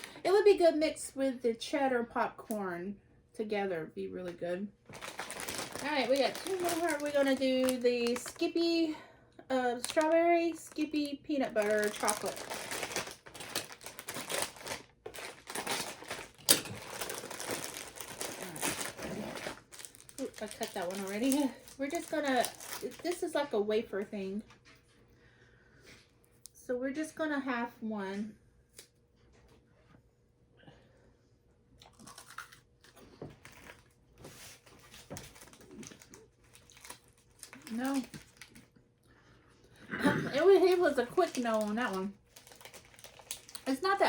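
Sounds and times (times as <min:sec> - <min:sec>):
plastic wrapper crinkling: 0:04.9 - 0:08.8, 0:09.6 - 0:23.5, 0:31.8 - 0:38.8, 0:40.4 - 0:44.0
chewing crunchy wafer: 0:15.2 - 0:20.5, 0:31.8 - 0:33.9, 0:35.2 - 0:38.8.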